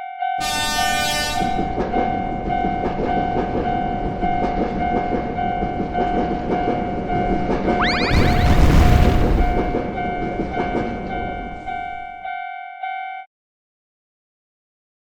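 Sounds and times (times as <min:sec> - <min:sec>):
railroad crossing bell ringing: 0:00.0 - 0:07.5, 0:10.1 - 0:13.3
train horn blast: 0:00.4 - 0:01.8
train rumble and wheel clatter: 0:01.1 - 0:12.4.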